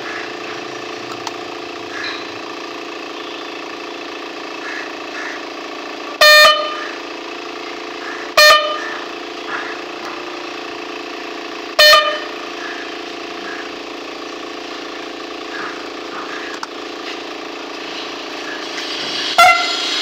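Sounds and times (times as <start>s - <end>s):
air horn blasts: 6.1s - 7.0s, 8.0s - 10.6s, 11.7s - 13.7s, 19.2s - 20.0s.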